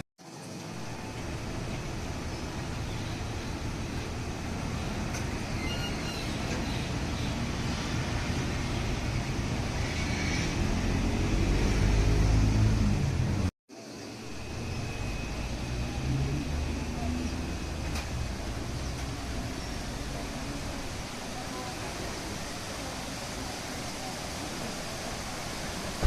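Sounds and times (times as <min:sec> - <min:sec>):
road traffic noise: 0:00.0 - 0:26.0
vehicle engine: 0:06.3 - 0:13.5, 0:14.2 - 0:23.4.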